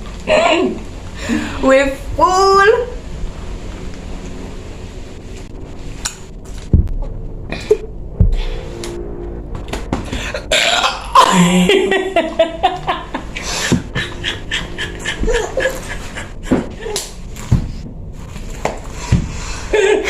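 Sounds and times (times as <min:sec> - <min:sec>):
woman belching: 0:10.5 - 0:12.0.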